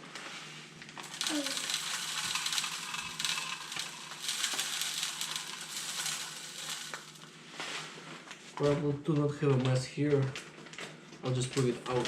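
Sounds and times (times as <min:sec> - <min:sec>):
bird seed pouring into plastic feeder: 0:01.0 - 0:07.3.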